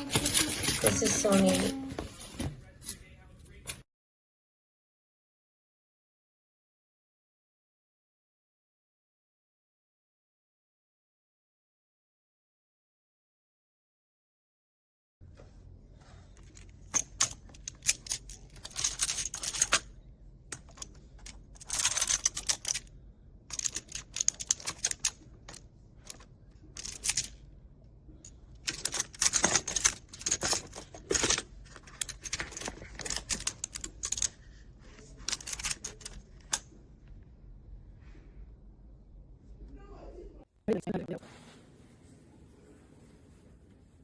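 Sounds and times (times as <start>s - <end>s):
plastic building blocks clicking: 16.4s - 19.9s, 20.5s - 22.9s, 23.5s - 27.4s, 28.5s - 36.7s.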